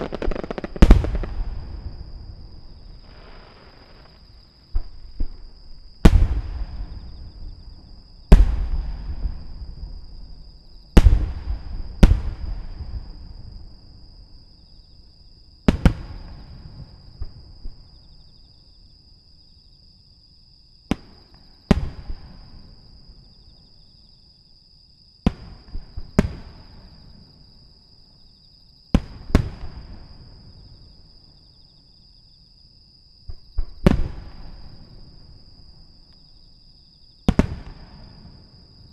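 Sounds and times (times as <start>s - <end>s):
firework shells booming: 0.0s - 4.1s, 4.7s - 13.4s, 25.3s - 26.6s, 37.3s - 38.2s.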